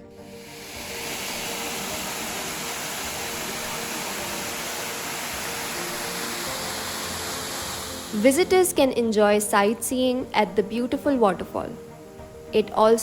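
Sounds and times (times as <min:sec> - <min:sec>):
waterfall rushing hiss: 0:00.0 - 0:08.8.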